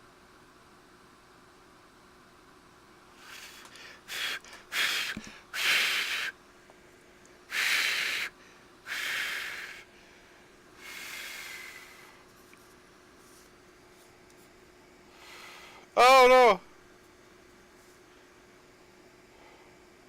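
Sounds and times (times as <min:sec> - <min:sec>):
person breathing puffs: 0:03.2 - 0:06.4, 0:07.5 - 0:12.3, 0:15.1 - 0:15.9.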